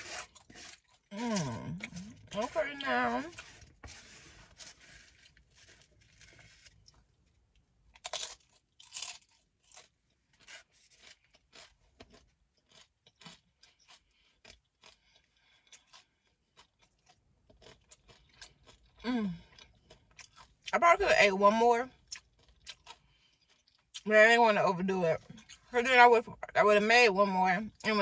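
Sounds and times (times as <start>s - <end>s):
crunching crisp tortilla: 0.0s - 20.7s.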